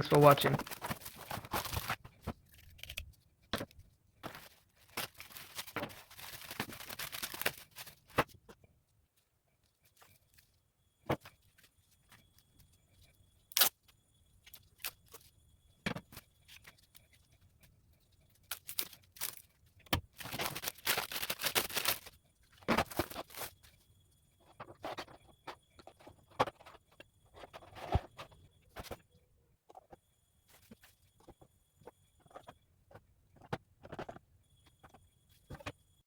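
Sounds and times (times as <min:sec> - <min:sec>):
packaging rustling and scraping: 0:00.1 - 0:08.4, 0:18.4 - 0:23.7.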